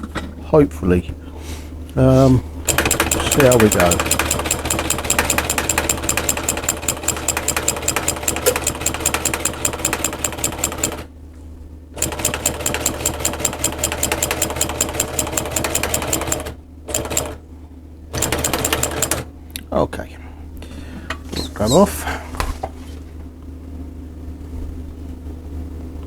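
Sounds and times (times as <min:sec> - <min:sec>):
sewing machine stitching: 0:02.7 - 0:11.1, 0:12.0 - 0:17.4, 0:18.2 - 0:19.3.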